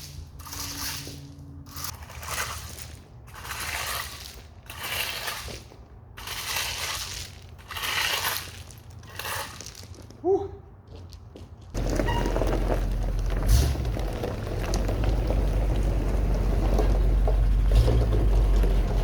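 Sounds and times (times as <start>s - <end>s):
gravel crunching and scraping: 0.0s - 19.0s
tractor engine running: 11.8s - 19.0s.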